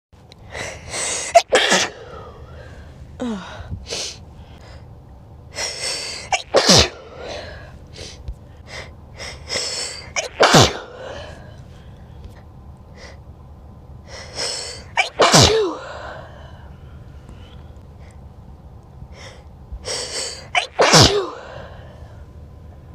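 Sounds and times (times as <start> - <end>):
person sneezing: 1.0 - 2.2, 6.2 - 7.4, 9.6 - 11.2, 14.9 - 15.9, 20.2 - 21.6
quick in-breath: 21.4 - 22.3.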